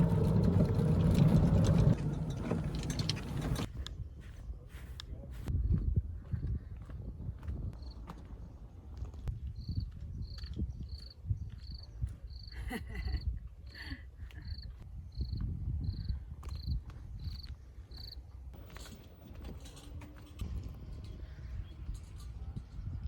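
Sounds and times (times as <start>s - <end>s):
constant low rumble: 0.0s - 5.5s.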